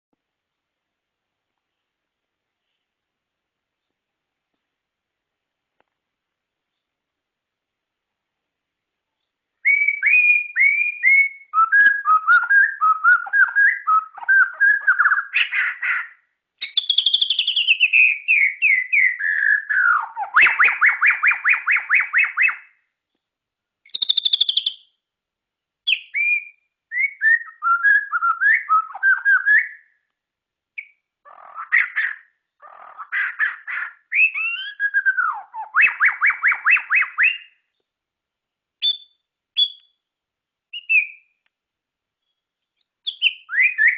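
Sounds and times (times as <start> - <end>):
bird singing whistled phrases: 9.6 - 22.8, 23.9 - 24.9, 25.9 - 30.0, 32.9 - 37.6, 38.8 - 40.0, 40.7 - 41.4, 43.0 - 43.9.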